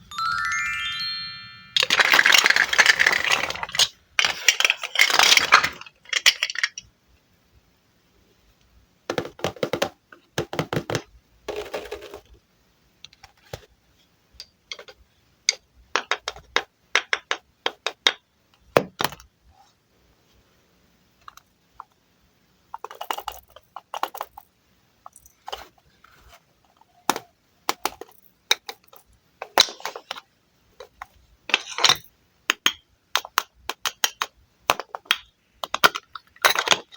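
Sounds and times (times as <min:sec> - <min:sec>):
wooden toy pieces clattering: 0:01.8 - 0:06.9, 0:22.8 - 0:24.4, 0:30.8 - 0:36.9
wooden toy clicks and taps: 0:14.4 - 0:18.2, 0:32.5 - 0:36.2.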